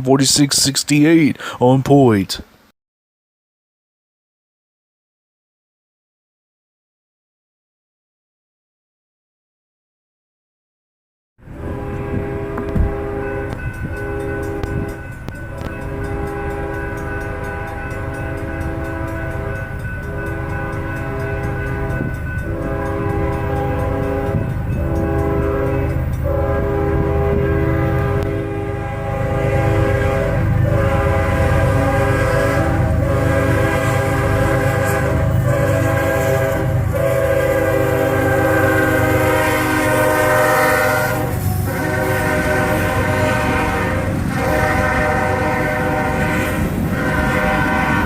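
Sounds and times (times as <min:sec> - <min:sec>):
train rumble: 0:11.4 - 0:48.0
locomotive air horn blasts: 0:11.6 - 0:48.0.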